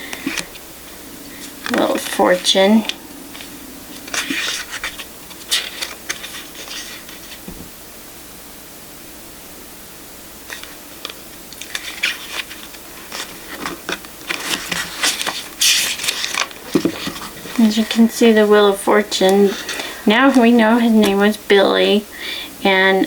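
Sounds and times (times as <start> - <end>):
cards rustling and sliding: 1.3 - 7.6, 10.5 - 21.3.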